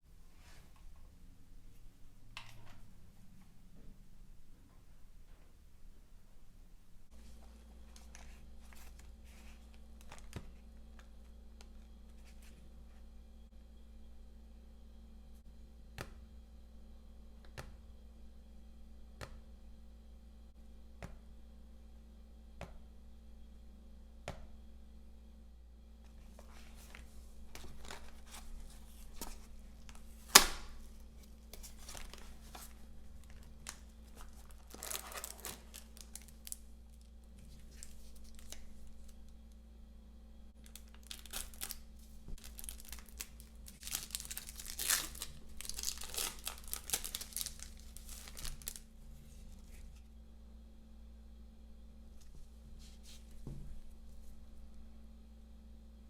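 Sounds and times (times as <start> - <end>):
plastic shrink wrap tearing: 26.4 - 39.2, 40.6 - 48.9.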